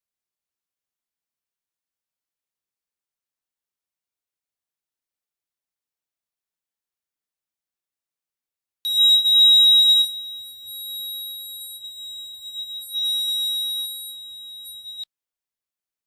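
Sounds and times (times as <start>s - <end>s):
high-pitched alarm buzzer: 8.9s - 15.1s.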